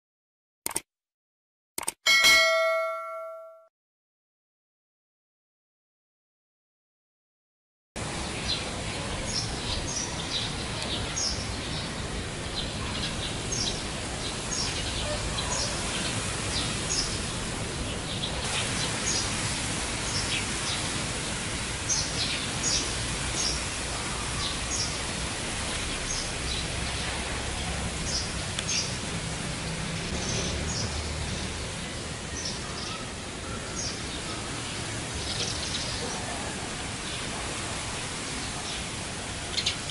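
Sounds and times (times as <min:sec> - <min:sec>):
small birds chirping: 0:25.9 - 0:29.0, 0:38.4 - 0:39.9.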